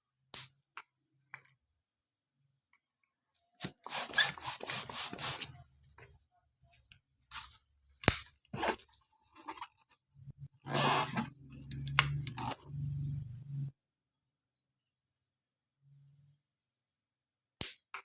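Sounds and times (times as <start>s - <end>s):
sharp plastic snap: 8.0s - 8.4s, 17.6s - 18.0s.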